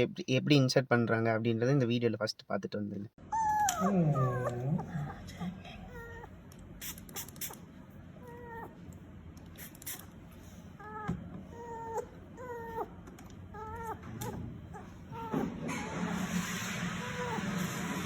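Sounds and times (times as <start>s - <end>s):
dog whimpering: 3.2s - 6.4s, 8.1s - 8.9s, 10.7s - 18.0s.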